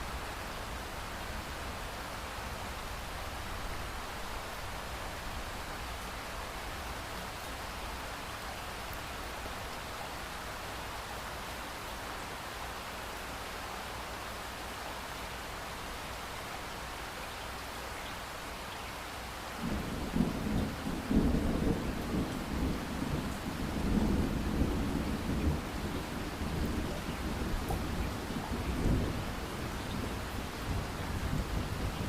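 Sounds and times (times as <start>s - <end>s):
steady rain falling: 0.0s - 32.0s.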